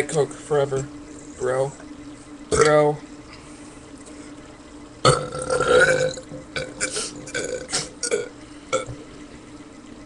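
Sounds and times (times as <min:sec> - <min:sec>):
person belching loudly: 0:05.0 - 0:08.9.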